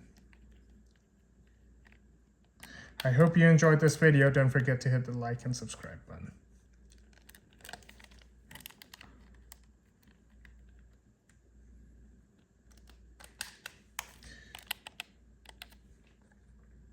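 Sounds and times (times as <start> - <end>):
game controller clicks: 6.9 - 10.8, 12.7 - 15.8.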